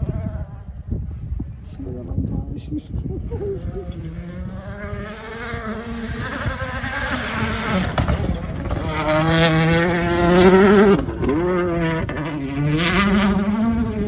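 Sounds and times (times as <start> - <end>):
rally car engine revving: 3.4 - 14.0.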